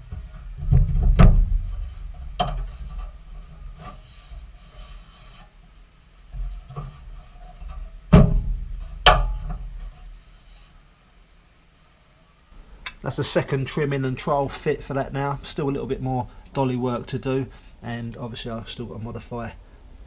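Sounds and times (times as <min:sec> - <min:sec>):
metal panel rubbing and scraping: 0:00.0 - 0:10.8
sharp knocks on metal: 0:00.6 - 0:01.8, 0:08.1 - 0:09.8.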